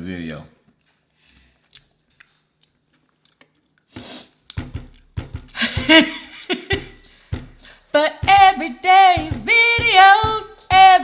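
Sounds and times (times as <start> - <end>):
sharp knocks: 4.0 - 11.0.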